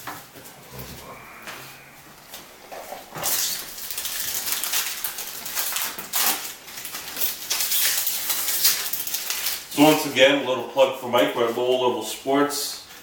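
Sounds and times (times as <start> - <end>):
foil wrappers crinkling: 1.0 - 13.0
cards rustling: 1.6 - 10.2.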